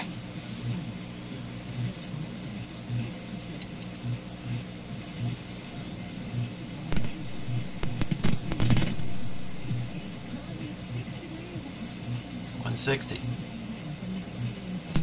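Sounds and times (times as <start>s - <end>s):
low electrical hum: 0.0s - 15.0s
thin high whine: 0.0s - 15.0s
sharp clicks: 6.9s - 9.9s.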